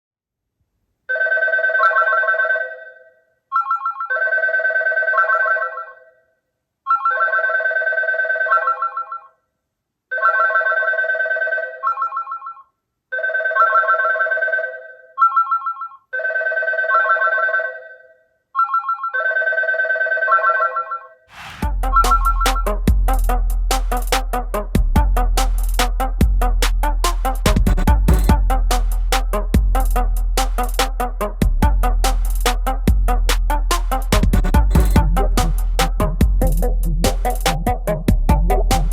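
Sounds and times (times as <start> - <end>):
warbling phone ringtone: 1.1 - 6.3, 6.9 - 9.5, 10.1 - 21.2, 21.8 - 22.9.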